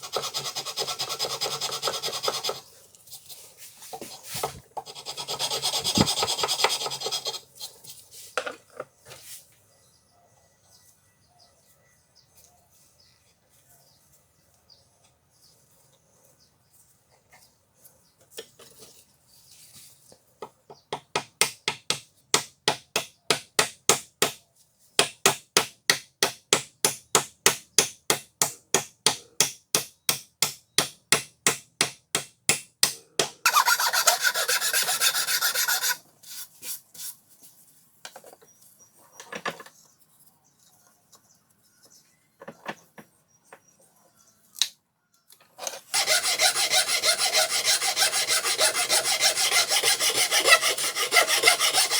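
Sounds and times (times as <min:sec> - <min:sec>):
file scraping: 0:00.0 - 0:02.7, 0:04.2 - 0:07.8, 0:32.8 - 0:36.5, 0:45.6 - 0:51.9
hand file rubbing back and forth: 0:00.0 - 0:02.7, 0:04.1 - 0:07.9, 0:32.8 - 0:37.1, 0:45.8 - 0:51.9.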